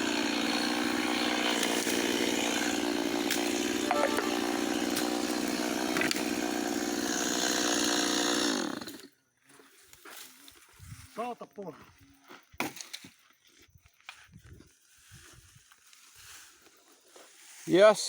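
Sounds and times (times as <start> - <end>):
chainsaw engine running: 0.0 - 9.2.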